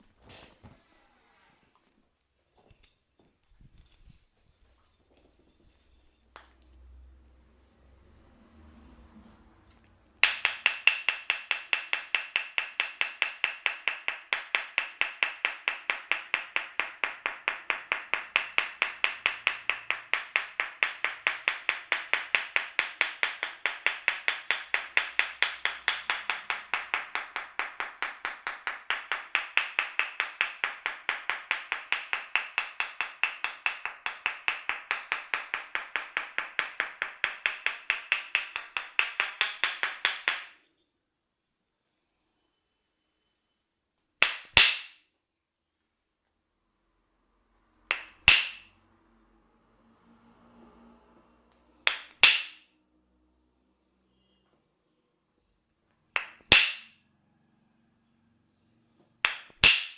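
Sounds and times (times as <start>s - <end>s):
percussive massage tapping: 9.8s - 40.7s, 44.2s - 45.1s, 47.8s - 48.8s, 51.8s - 52.7s, 56.1s - 57.0s, 59.1s - 59.9s.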